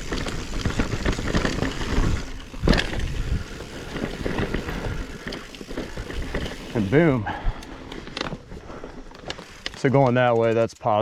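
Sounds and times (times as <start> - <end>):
bike thump on rock: 0.0 - 5.0
chain and frame rattle: 0.0 - 7.1
bike tyres on rocky trail: 0.0 - 11.0.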